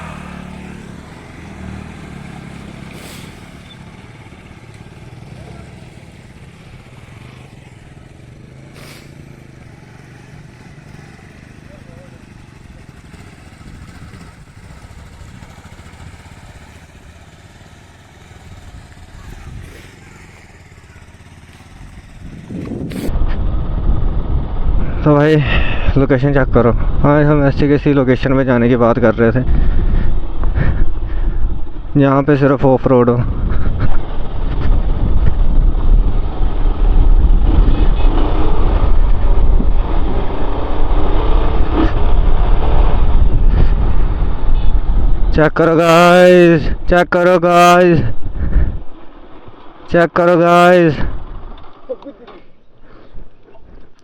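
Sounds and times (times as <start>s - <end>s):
motorcycle engine idling: 0.0s - 23.1s
motorcycle engine running: 0.0s - 54.0s
wind rumble on microphone: 21.7s - 32.0s, 32.7s - 45.7s, 48.0s - 49.4s.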